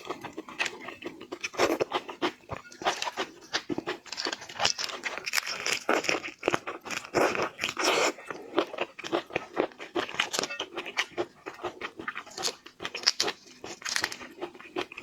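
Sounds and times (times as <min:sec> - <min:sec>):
wet chewing and smacking: 0:00.0 - 0:15.0
shell crackling and tearing: 0:12.3 - 0:14.3.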